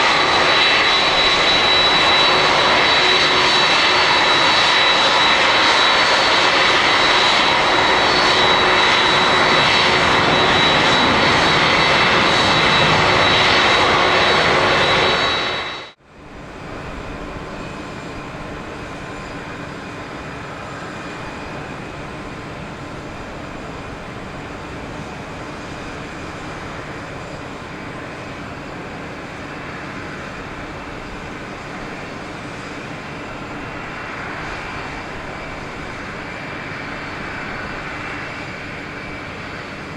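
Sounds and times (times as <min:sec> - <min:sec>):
jet engines whining and rushing: 0:00.0 - 0:39.9.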